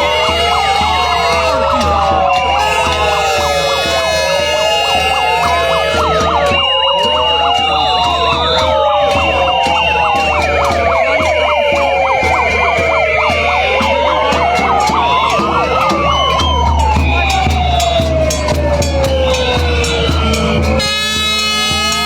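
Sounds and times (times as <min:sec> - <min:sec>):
high-pitched tones: 0:00.0 - 0:20.9
sirens wailing: 0:00.0 - 0:22.0.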